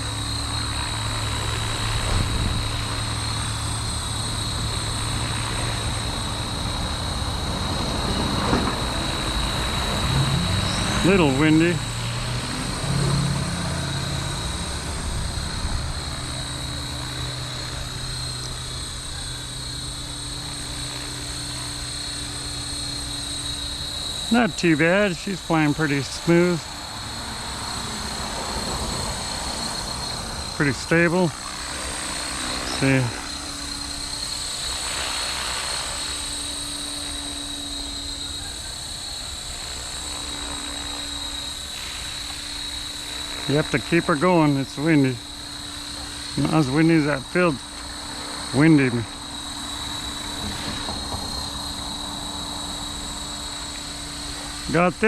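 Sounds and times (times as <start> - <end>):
high motor whine: 0.0 - 55.0
rotor blades humming: 0.0 - 55.0
wind rumble on microphone: 1.8 - 4.7
wind noise on microphone: 2.0 - 3.1.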